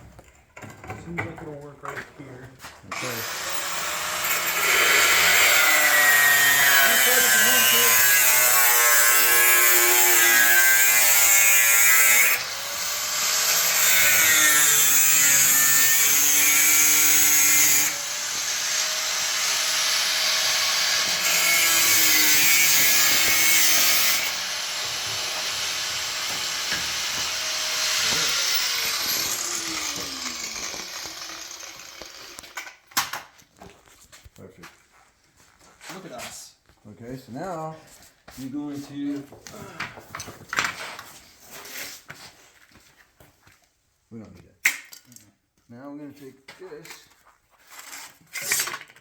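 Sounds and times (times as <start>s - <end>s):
power tool cutting sheet steel: 2.9s - 32.6s.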